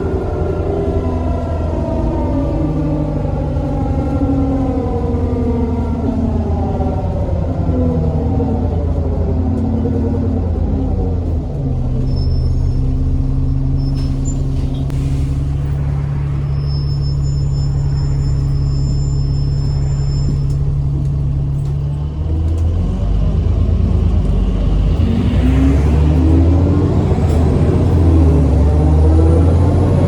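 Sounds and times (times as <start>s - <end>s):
bus engine running: 0.0s - 30.0s
thin high whine: 15.5s - 20.6s.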